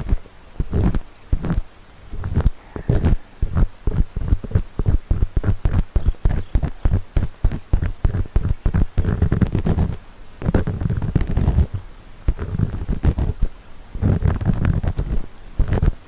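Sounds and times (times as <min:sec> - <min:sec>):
ear pick scraping microphone: 0:00.0 - 0:16.0
steady rubbing: 0:00.0 - 0:16.0.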